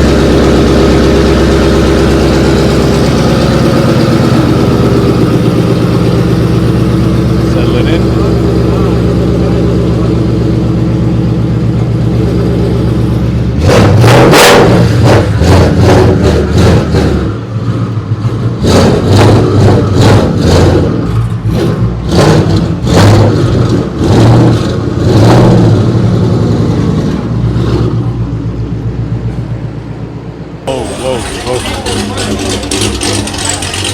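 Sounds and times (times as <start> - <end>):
car engine idling: 0.0 - 25.2, 25.8 - 33.9
car engine revving: 0.0 - 33.9.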